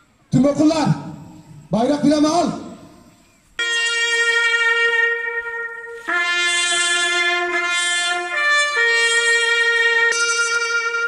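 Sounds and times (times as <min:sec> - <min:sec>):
brass horn long held notes: 0:03.6 - 0:11.0.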